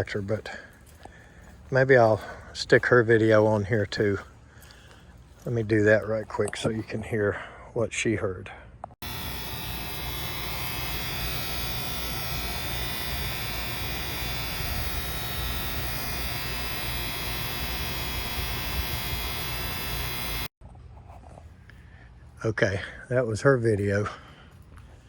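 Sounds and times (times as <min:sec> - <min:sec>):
contactor electrical buzz: 0:09.0 - 0:20.5
low hum: 0:09.0 - 0:20.5.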